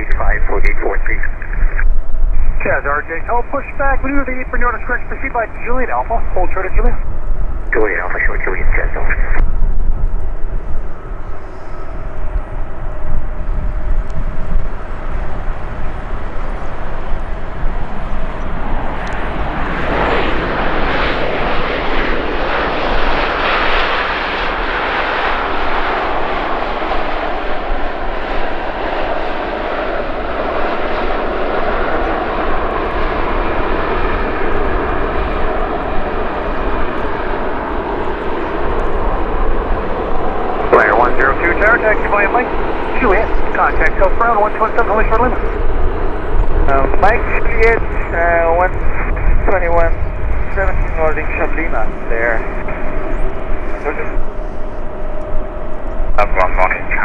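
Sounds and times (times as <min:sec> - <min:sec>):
jet engines rumbling: 0:00.0 - 0:57.0.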